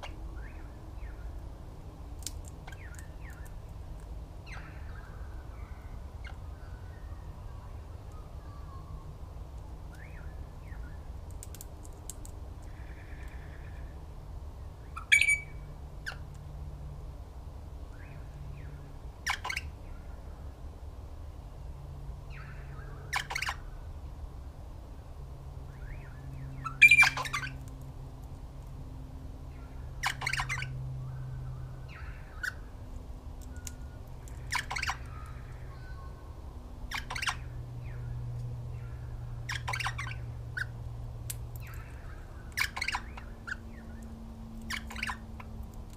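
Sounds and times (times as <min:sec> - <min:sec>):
low background rumble: 0:00.0 - 0:45.9
birds squawking: 0:15.0 - 0:16.2, 0:26.6 - 0:27.6, 0:30.0 - 0:30.8, 0:34.3 - 0:36.2, 0:36.9 - 0:38.0, 0:38.8 - 0:40.7, 0:41.6 - 0:43.8, 0:44.7 - 0:45.3.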